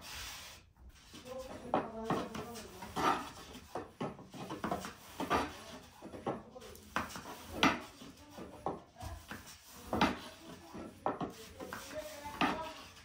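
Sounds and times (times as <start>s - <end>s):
baking implements knocking and clattering: 1.6s - 13.0s.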